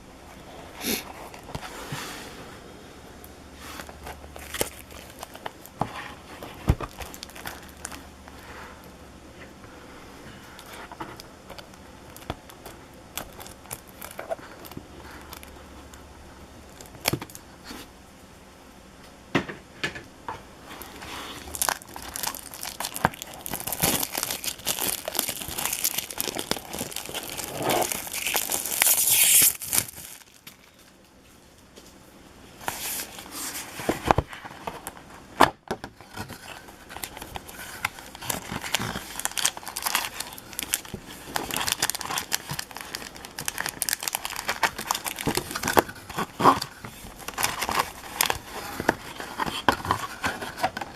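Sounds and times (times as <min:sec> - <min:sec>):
wrappers crinkling and tearing: 0:03.8 - 0:08.1, 0:10.6 - 0:15.6, 0:20.9 - 0:30.9, 0:36.0 - 0:50.9.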